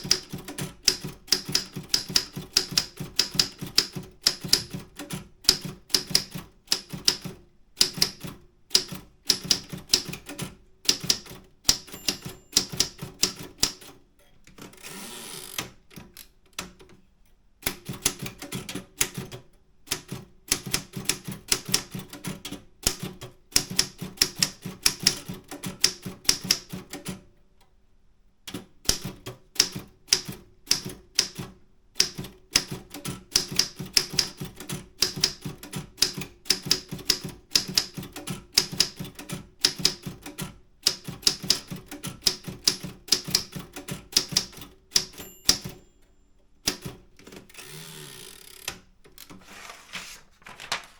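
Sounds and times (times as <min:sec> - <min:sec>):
typewriter keys clacking: 0:00.0 - 0:13.8, 0:32.1 - 0:45.8.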